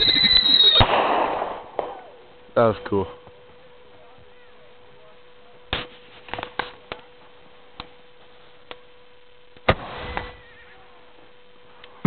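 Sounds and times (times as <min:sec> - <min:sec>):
fireworks bangs and cracks: 0:00.0 - 0:02.0
fireworks crackling: 0:00.0 - 0:03.7, 0:05.7 - 0:08.9, 0:09.5 - 0:12.0.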